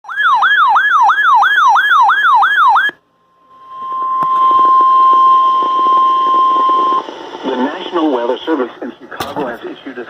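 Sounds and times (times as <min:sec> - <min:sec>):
electronic siren yelp: 0:00.0 - 0:07.6
radio static: 0:04.2 - 0:10.0.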